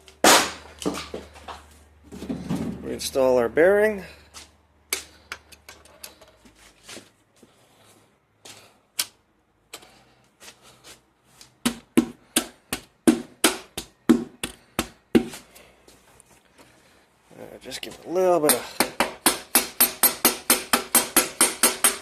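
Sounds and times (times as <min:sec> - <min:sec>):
hammer tapping on metal: 0:18.5 - 0:22.0.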